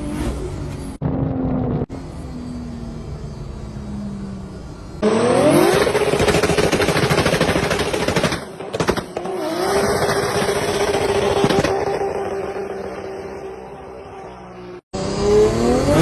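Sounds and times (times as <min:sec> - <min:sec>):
car engine revving with crackling rasp: 0:05.0 - 0:16.0.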